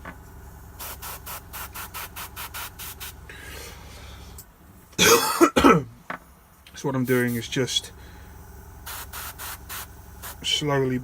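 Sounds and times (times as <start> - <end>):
compressor humming: 0.0 - 11.0
airbrush spraying: 0.8 - 3.2, 7.0 - 7.6, 8.8 - 10.5
person clearing throat: 5.0 - 6.0.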